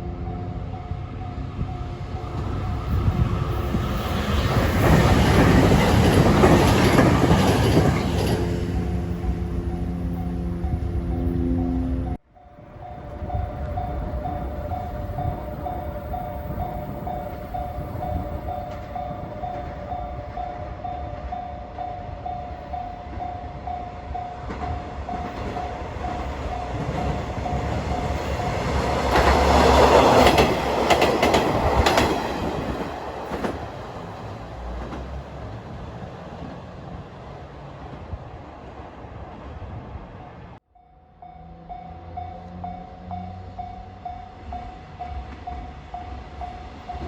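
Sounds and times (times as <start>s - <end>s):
level-crossing warning bell: 0.0s - 32.1s, 40.8s - 47.0s
diesel railcar passing: 0.0s - 47.0s
train wheels clacking on rail joints: 3.8s - 9.6s, 24.4s - 35.7s.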